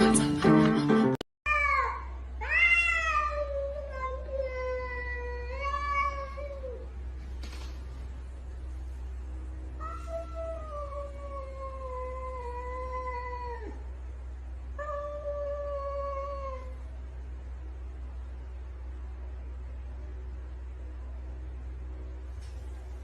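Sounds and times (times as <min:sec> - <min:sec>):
cat yowling: 0:01.5 - 0:06.8, 0:14.8 - 0:16.8
steady low hum: 0:01.5 - 0:23.0.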